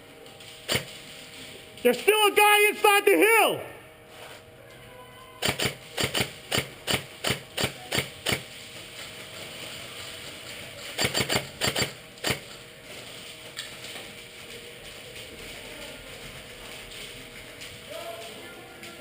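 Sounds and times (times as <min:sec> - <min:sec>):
airsoft guns firing: 0:05.4 - 0:08.5, 0:11.0 - 0:12.4.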